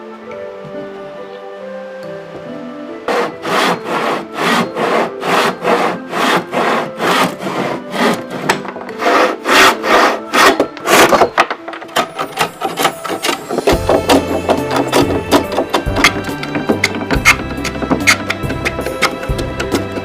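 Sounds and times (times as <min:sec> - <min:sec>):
soft background music: 0:00.0 - 0:20.0
sawing strokes on wood: 0:03.1 - 0:11.3, 0:12.4 - 0:20.0.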